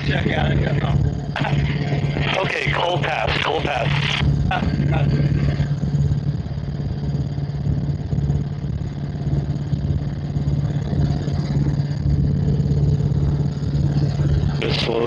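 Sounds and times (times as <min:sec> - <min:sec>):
helicopter engine and rotor: 0:00.0 - 0:15.0.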